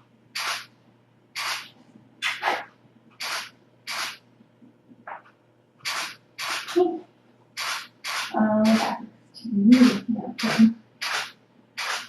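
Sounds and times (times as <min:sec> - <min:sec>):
camera shutter clicks: 0:00.4 - 0:00.7, 0:01.4 - 0:02.6, 0:03.2 - 0:04.2, 0:05.8 - 0:06.8, 0:07.6 - 0:08.9, 0:09.8 - 0:12.0.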